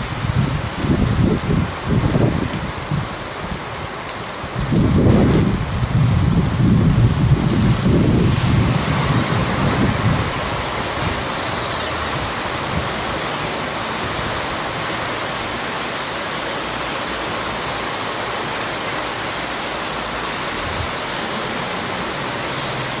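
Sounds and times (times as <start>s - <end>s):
low thunder rumble: 0.0s - 3.7s, 4.5s - 15.0s
steady rain: 0.0s - 23.0s.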